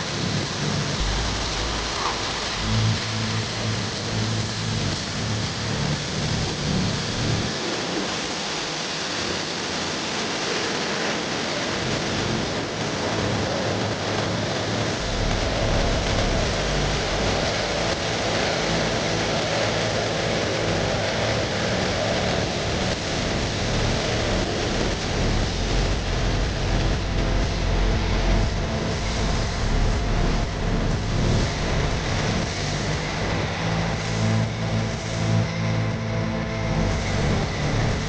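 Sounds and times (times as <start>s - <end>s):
low hum: 0.0s - 9.3s, 11.8s - 38.0s
pressure washer spray hissing: 0.0s - 13.0s.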